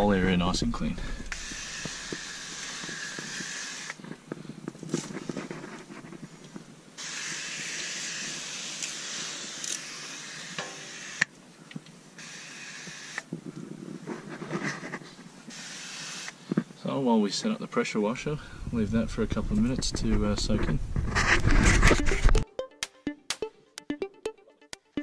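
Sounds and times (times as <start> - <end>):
hissing spray: 1.3 - 4.0, 7.0 - 11.3, 12.2 - 13.3, 15.5 - 16.4.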